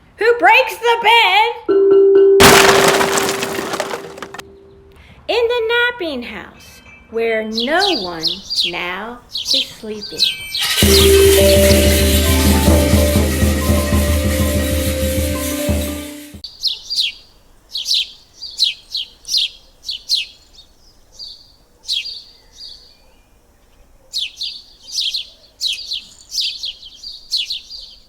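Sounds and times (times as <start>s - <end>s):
birds chirping: 6.6s - 12.7s
music: 10.6s - 16.4s.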